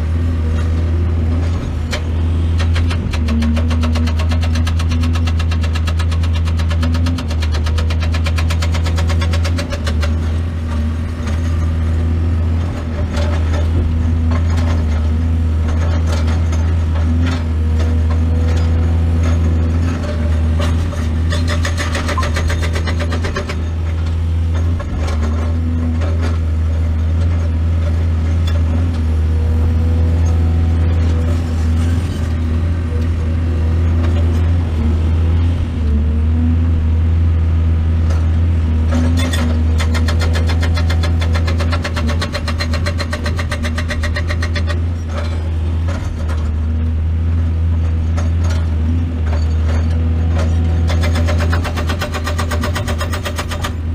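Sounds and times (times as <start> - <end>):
excavator diesel engine droning: 0.0 - 53.9
knocks and clanks: 1.3 - 11.8, 12.6 - 29.1, 38.0 - 46.7.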